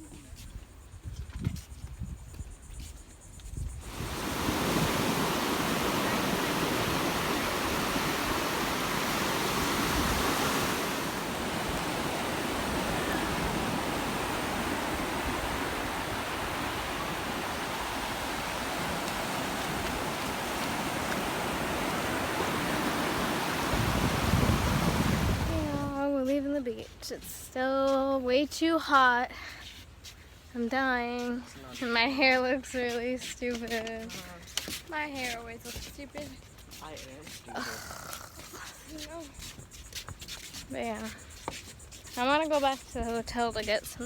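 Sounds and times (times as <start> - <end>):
ocean surf washing onto beach: 3.8 - 26.0.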